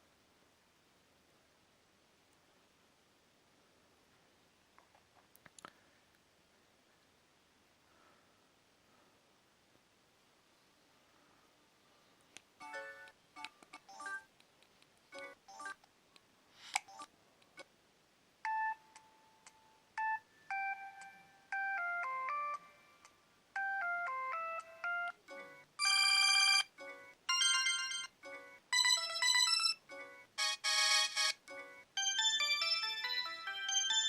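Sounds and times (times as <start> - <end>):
phone ringtone melodies: 20.0 - 34.0.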